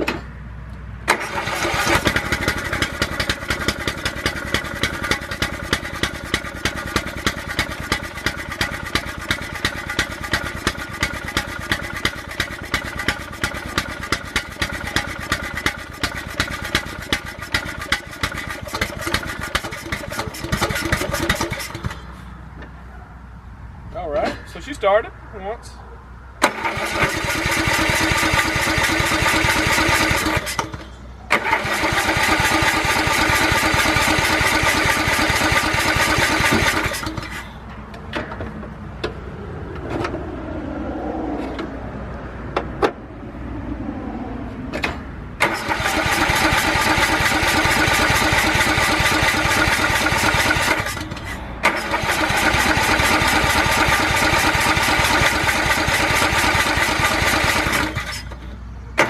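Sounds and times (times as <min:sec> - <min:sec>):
electric starter cranking engine: 0:01.0 - 0:22.2, 0:26.4 - 0:37.6, 0:44.8 - 0:59.0.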